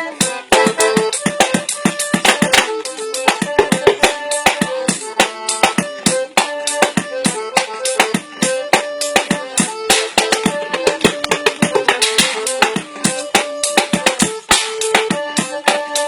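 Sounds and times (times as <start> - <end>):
melody of held notes: 0.0 - 16.0
tin-can drum kit: 0.0 - 16.0.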